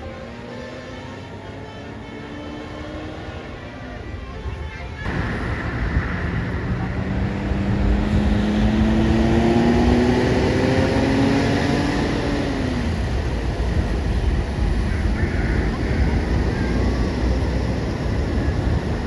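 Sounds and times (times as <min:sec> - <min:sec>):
low rumble of traffic: 0:00.0 - 0:19.0
heavy vehicle engine pulling away: 0:05.1 - 0:19.0.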